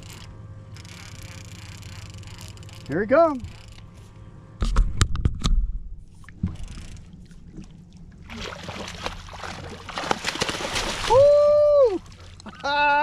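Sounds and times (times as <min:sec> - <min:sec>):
water splashing and sloshing: 0:06.0 - 0:13.0
fish thrashing at surface: 0:08.3 - 0:11.2.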